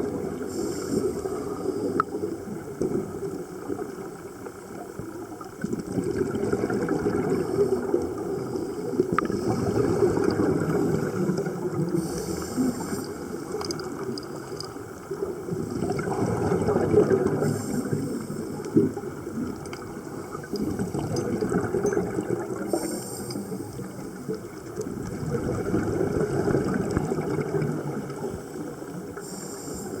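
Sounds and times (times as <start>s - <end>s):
gurgling exhaled bubbles: 0.0s - 29.2s
regulator inhalation hiss: 0.4s - 2.1s, 11.9s - 13.5s, 17.4s - 18.6s, 22.6s - 24.0s, 28.5s - 30.0s.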